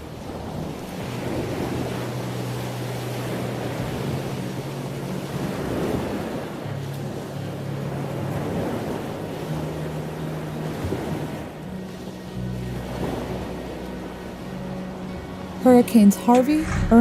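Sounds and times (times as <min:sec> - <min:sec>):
sea surf: 0:00.0 - 0:17.0
steady low hum: 0:16.4 - 0:17.0
wind noise: 0:16.4 - 0:17.0.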